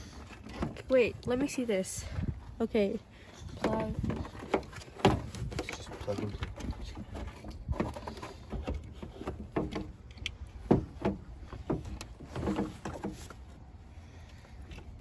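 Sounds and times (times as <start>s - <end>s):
knocks and clicks handling plastic: 3.4s - 13.4s.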